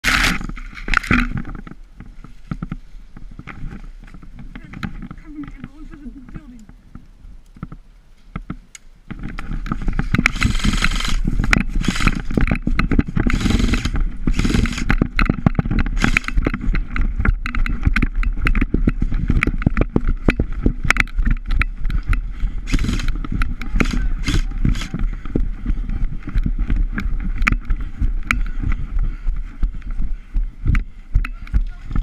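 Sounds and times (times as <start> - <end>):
footsteps: 0.0 - 32.0
low rumble of wind: 0.0 - 32.0
gear knocking and rattling: 9.1 - 30.0
hissing bursts: 22.6 - 23.1.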